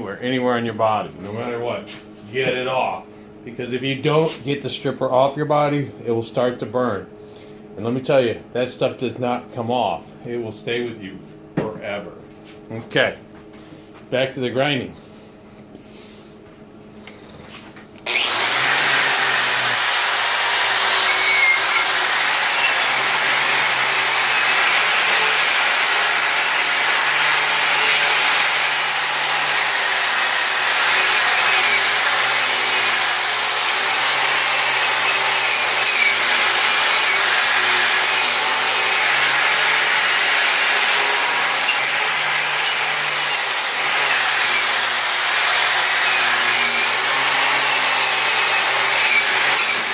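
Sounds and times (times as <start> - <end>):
power grinder grinding: 18.0 - 49.9.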